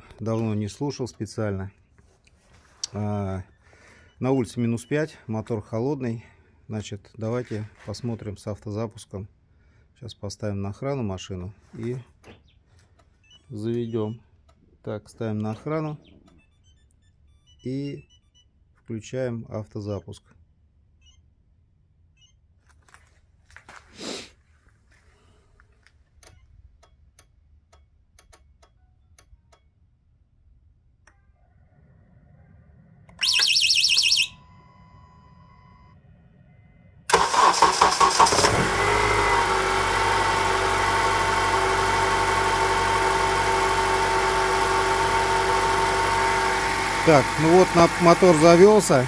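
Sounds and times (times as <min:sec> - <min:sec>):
high pulsed alarm chirp: 0:33.2 - 0:36.0
car engine cranking and idling: 0:37.0 - 0:49.0.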